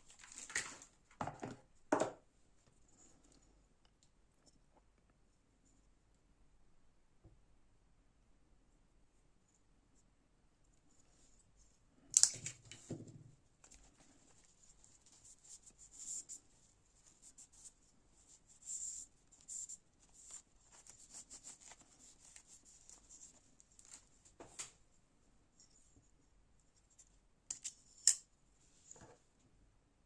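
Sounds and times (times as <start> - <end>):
packaging rustling and tearing: 0.0 - 1.0.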